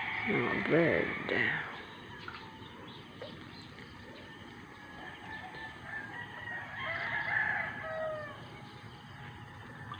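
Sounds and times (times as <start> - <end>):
rooster crowing: 4.7 - 8.5.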